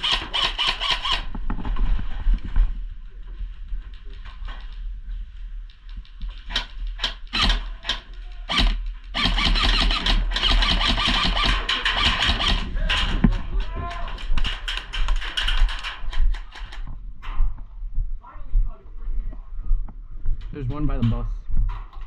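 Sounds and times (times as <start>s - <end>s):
full-auto airsoft fire: 0.0s - 1.3s, 7.0s - 12.7s
airsoft gun shots: 7.3s - 12.7s.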